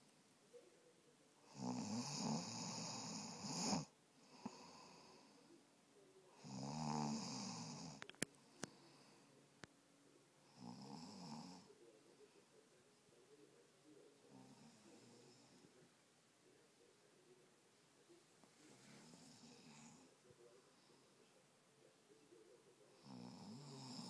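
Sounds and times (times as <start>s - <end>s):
person snoring: 1.4s - 5.3s, 6.3s - 8.0s, 23.0s - 24.0s.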